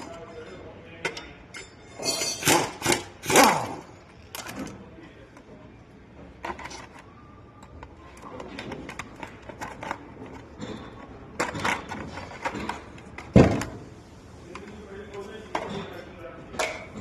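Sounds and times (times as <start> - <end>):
metal tools clinking on engine parts: 0.0 - 3.0.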